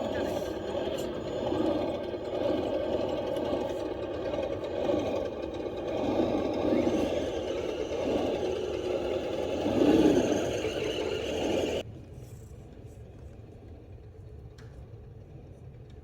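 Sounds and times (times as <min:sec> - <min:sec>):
rc car motor and gears whining: 0:00.0 - 0:11.8.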